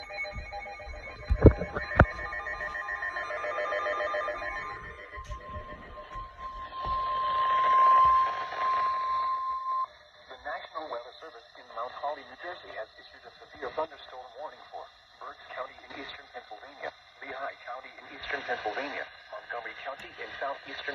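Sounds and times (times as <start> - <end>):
steady alert tone: 0.0 - 9.2.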